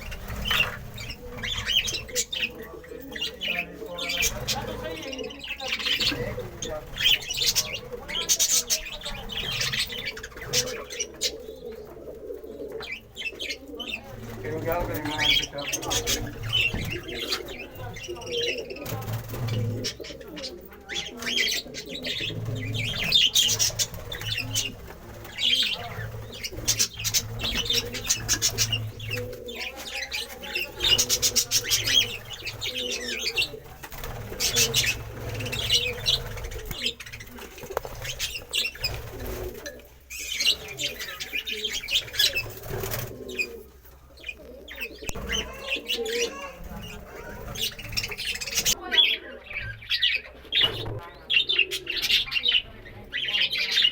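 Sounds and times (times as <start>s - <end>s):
wing flapping: 0.0s - 2.6s, 4.0s - 11.4s, 13.9s - 20.2s, 20.9s - 48.8s
budgerigars chirping and chattering: 0.0s - 53.9s.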